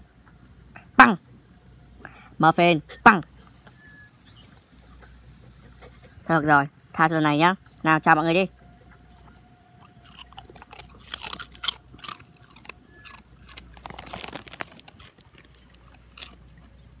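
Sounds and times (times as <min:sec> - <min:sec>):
dog crunching and chewing: 0:08.6 - 0:17.0.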